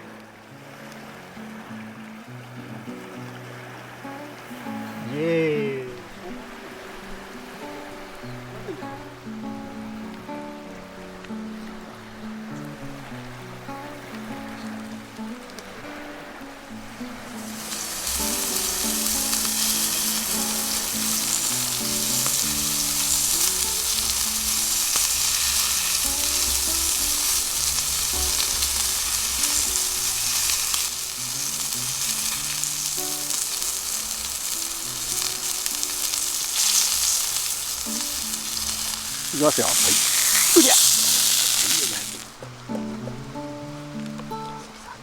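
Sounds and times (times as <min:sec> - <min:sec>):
slow melody: 0:00.0 - 0:45.0
food sizzling in a hot pan: 0:17.3 - 0:42.4.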